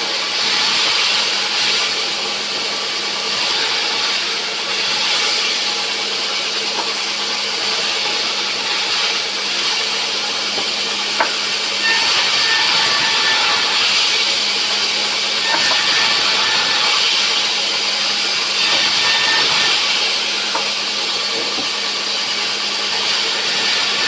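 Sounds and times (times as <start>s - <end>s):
saw blade hissing through wood: 8.7s - 24.0s.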